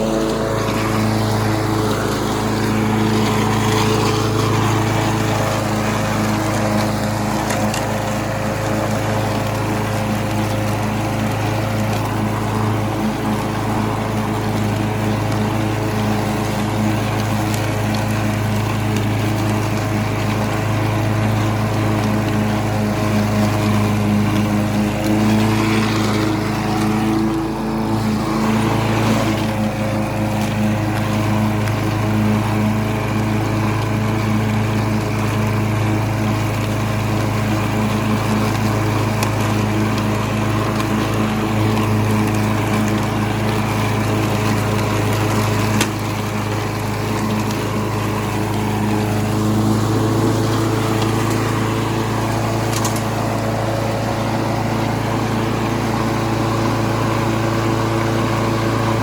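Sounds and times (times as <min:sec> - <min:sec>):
lawn mower engine running: 0:00.0 - 0:59.0.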